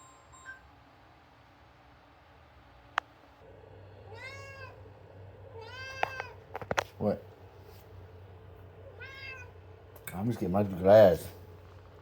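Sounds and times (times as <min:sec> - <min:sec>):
cat meowing: 0:04.1 - 0:04.8, 0:05.5 - 0:06.4, 0:08.8 - 0:09.6.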